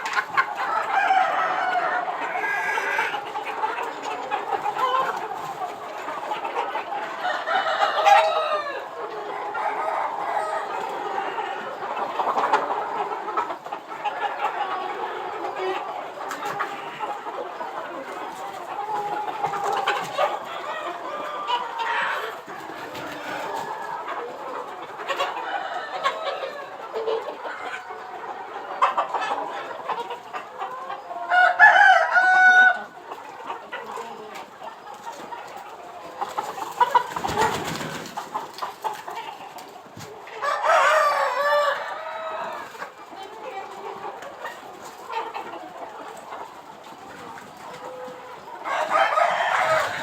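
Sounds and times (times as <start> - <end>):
chickens clucking: 0.0 - 50.0
rooster crowing: 0.6 - 2.9, 31.4 - 32.8, 40.4 - 42.6, 48.7 - 50.0.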